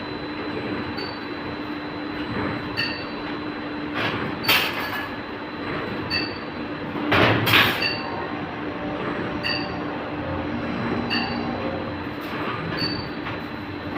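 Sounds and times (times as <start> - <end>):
motor hum: 5.2 - 13.9.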